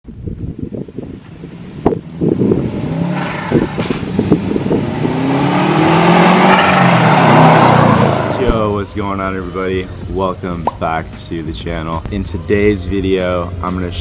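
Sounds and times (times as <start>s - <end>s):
turbocharged car engine accelerating: 1.5s - 8.7s.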